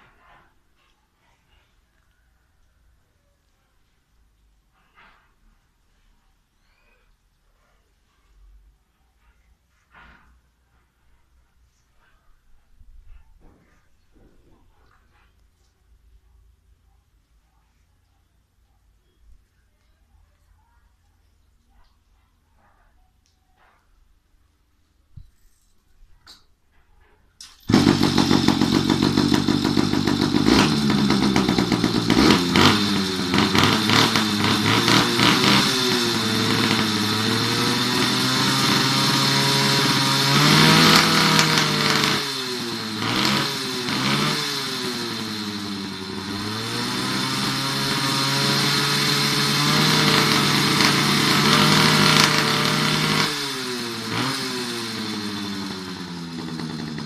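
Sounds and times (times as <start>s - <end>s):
small engine revving: 27.6s - 57.0s.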